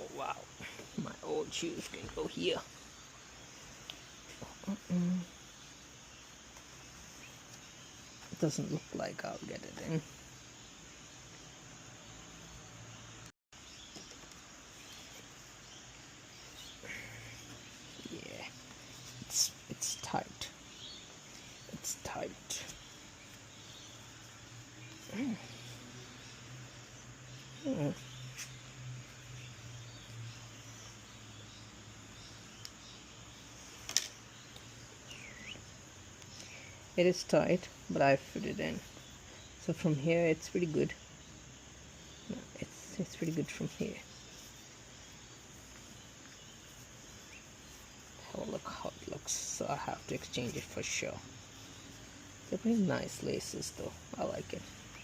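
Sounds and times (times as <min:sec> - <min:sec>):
faint background hiss: 0:00.0 - 0:55.0.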